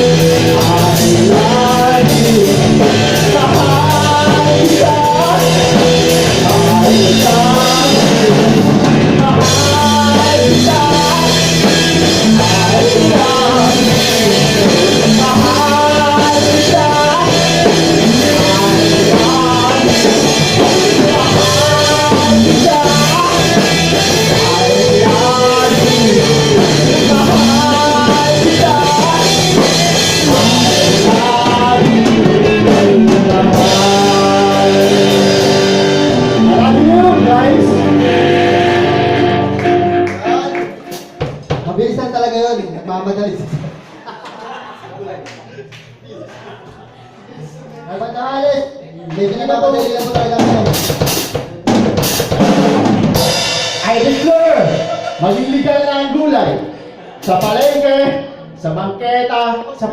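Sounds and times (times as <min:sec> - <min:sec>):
lead melody line: 0:00.0 - 0:41.2
drum kit: 0:00.0 - 0:42.4, 0:49.1 - 0:58.6
guitar: 0:00.0 - 0:42.6, 0:49.0 - 0:59.9.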